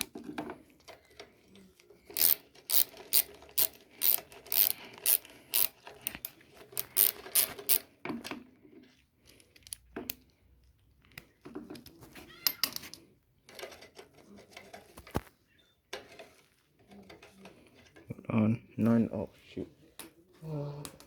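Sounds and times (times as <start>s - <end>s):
ratchet wrench clicking: 2.1s - 7.8s.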